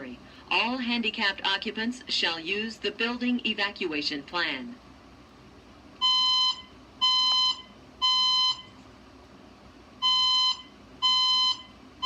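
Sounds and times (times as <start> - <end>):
fire alarm beeps: 6.0 - 8.7, 10.0 - 11.8.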